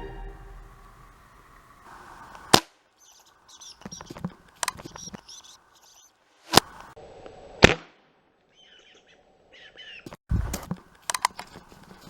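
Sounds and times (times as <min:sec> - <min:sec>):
birds chirping: 0:00.0 - 0:06.9, 0:08.5 - 0:10.2.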